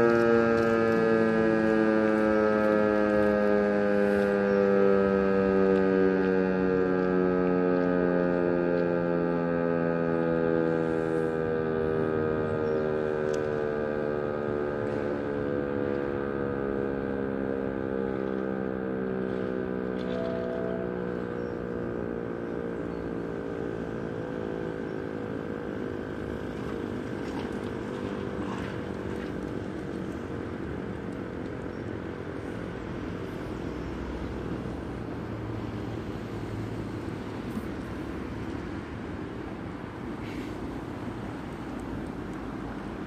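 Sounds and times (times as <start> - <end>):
siren winding down: 0.0 - 32.6
street and traffic noise: 0.0 - 43.0.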